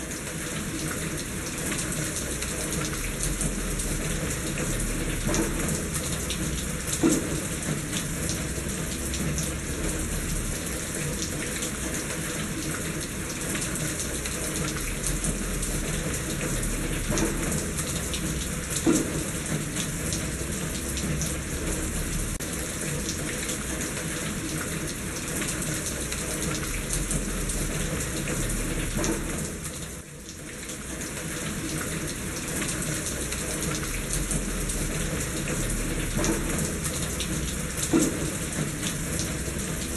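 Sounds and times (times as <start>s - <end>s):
steady rain: 0.0s - 39.9s
water running in a gutter: 0.0s - 39.9s
sharp drip knocks: 1.7s - 12.0s, 13.5s - 22.4s, 26.1s - 30.0s, 32.5s - 39.9s.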